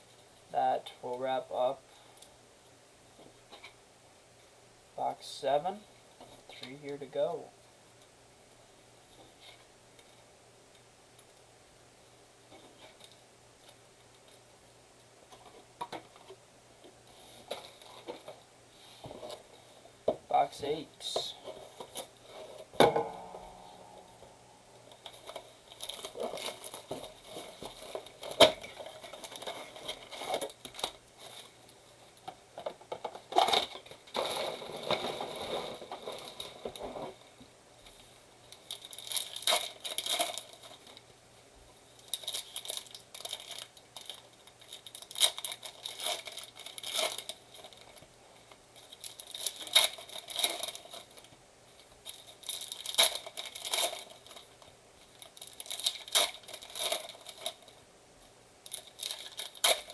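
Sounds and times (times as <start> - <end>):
foil packs crinkling and tearing: 24.9 - 31.6, 38.6 - 41.0, 42.0 - 48.0, 48.8 - 51.3, 52.0 - 57.8, 58.6 - 59.9.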